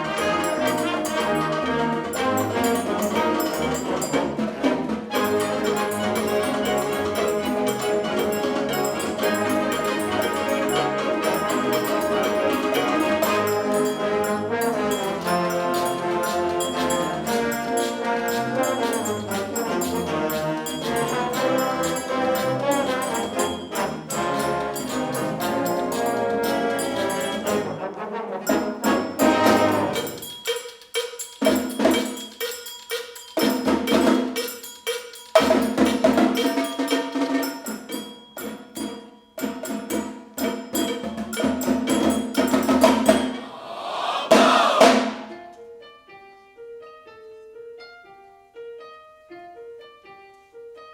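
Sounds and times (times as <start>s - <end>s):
wind ensemble playing mambo: 0.0s - 30.3s, 44.1s - 45.3s.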